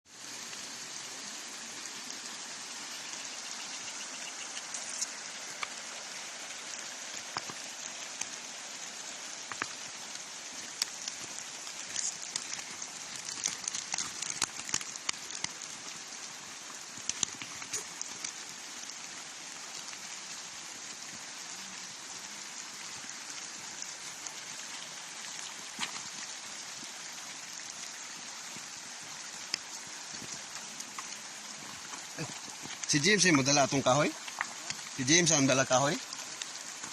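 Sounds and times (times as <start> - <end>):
river water flowing: 0.1 - 36.9
small splashes and drips: 0.1 - 36.9.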